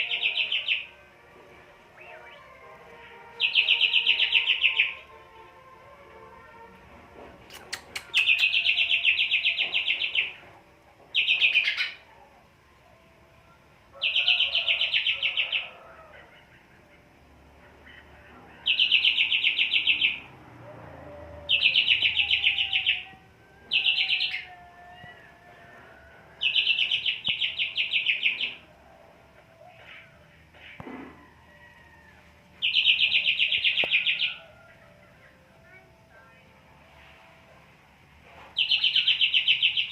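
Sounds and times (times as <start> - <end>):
bird singing high trills: 3.4 - 5.0, 8.0 - 10.4, 21.5 - 23.0, 32.6 - 34.4, 38.6 - 39.9.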